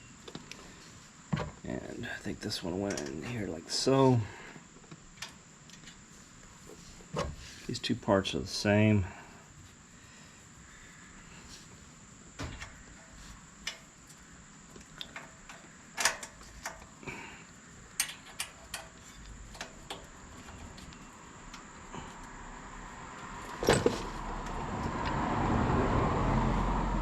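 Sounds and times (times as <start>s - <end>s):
small metal parts clicking: 17.9s - 20.1s.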